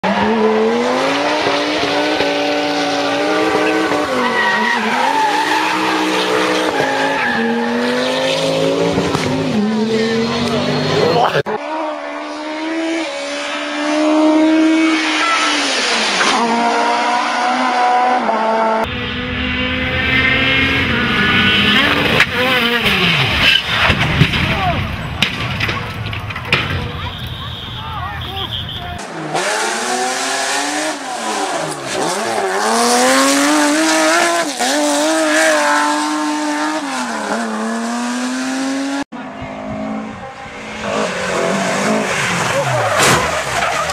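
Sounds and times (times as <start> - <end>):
car engine at high revs: 0.0 - 24.0, 29.0 - 43.9.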